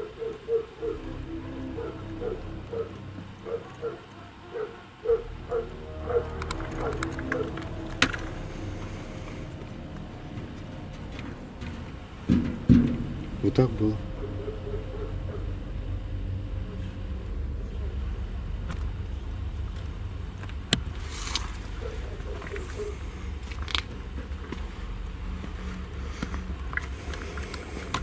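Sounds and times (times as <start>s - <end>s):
low rumble: 0.7s - 28.0s
sharp knocks: 10.3s - 13.6s.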